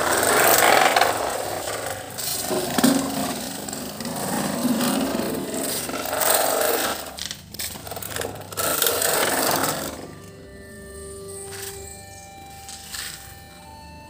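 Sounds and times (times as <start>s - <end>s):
rough scraping and rubbing: 0.0s - 10.4s
faint steady music tones: 0.0s - 14.0s.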